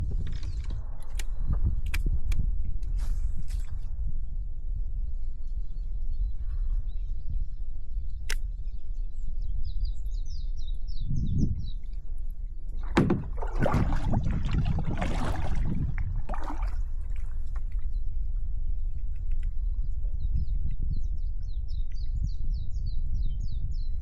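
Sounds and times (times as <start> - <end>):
wind rumble on microphone: 0.0 - 24.0
water splashing around kayak: 12.7 - 18.4.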